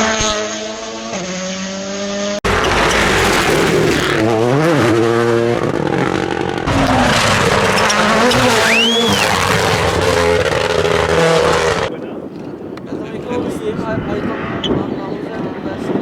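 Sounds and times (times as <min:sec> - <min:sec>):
rally car engines revving: 0:00.0 - 0:11.9
short rising and falling whistle: 0:08.2 - 0:09.4.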